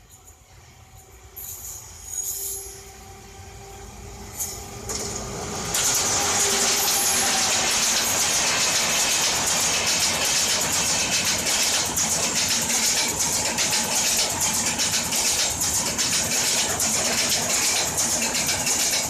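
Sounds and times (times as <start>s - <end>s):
train passing at speed: 0.0s - 19.0s
wheel squeals: 1.4s - 3.0s
rapid rail clatter: 4.8s - 19.0s.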